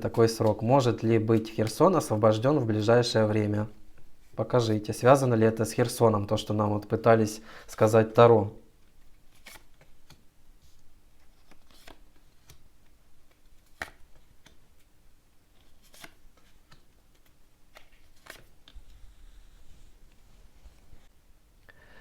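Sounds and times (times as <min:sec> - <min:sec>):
cards being shuffled: 0:09.0 - 0:14.9, 0:15.5 - 0:19.7.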